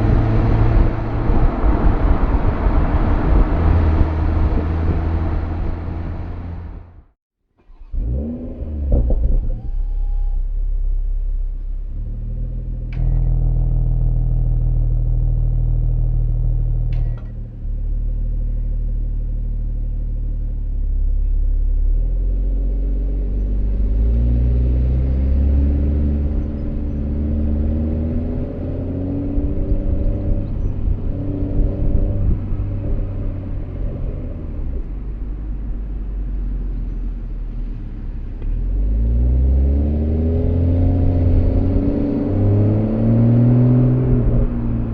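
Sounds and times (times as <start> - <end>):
exhaust cracks: 7.6 - 12.0
car exhaust drone: 7.9 - 44.9.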